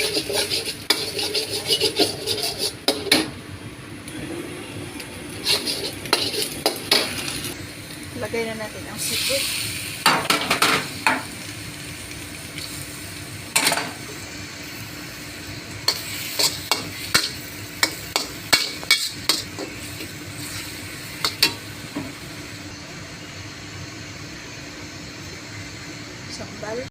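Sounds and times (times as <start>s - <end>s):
seafood sizzling in a pan: 0.0s - 3.1s, 5.4s - 22.7s
spatula scraping a pan: 0.0s - 3.3s, 5.4s - 7.2s, 15.9s - 21.5s.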